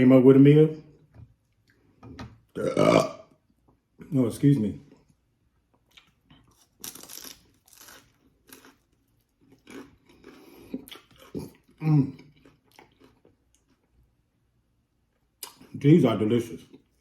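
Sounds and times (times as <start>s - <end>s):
chewing and crunching food: 4.8s - 14.2s.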